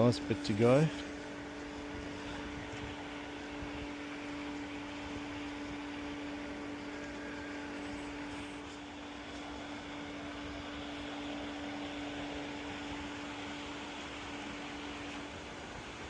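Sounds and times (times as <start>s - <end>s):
pool pump humming: 0.0s - 16.0s.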